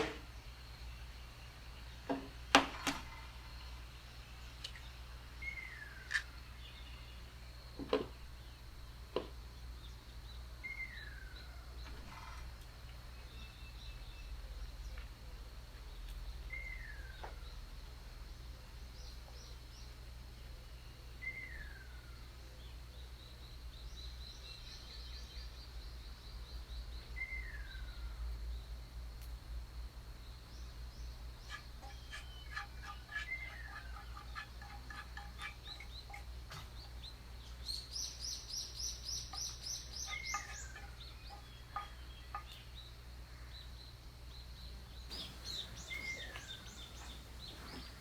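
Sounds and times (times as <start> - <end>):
faint high bird chirps: 45.1 - 48.0
low steady hum: 45.1 - 48.0.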